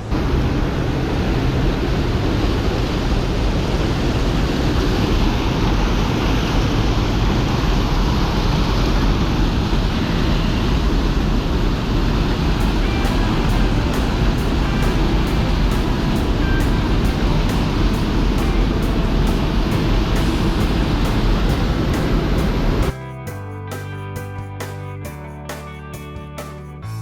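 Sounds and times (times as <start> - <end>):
creek water rushing: 2.2 - 22.9.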